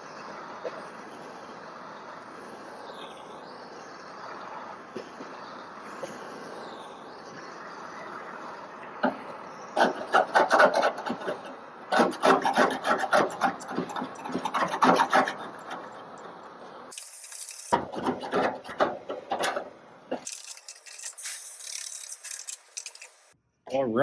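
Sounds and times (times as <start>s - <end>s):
scraper rasping on sheet metal: 9.8s - 16.3s, 16.9s - 23.4s.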